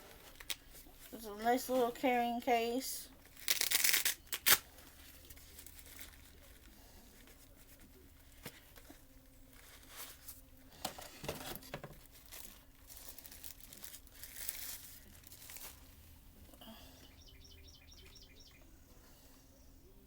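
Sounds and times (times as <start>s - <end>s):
plastic packaging crinkling: 0.1s - 1.1s, 3.1s - 16.0s.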